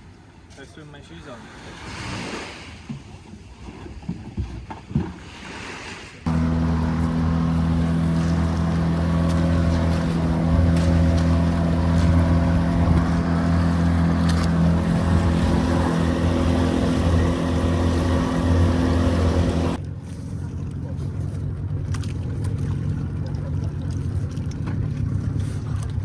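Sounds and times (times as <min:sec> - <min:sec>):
boat engine droning: 0:06.3 - 0:26.0.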